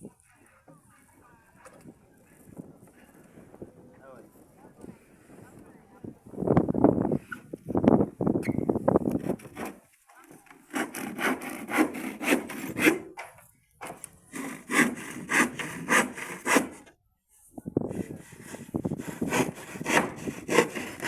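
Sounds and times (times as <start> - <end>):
hand saw cutting wood: 10.5 - 16.9, 17.9 - 21.0.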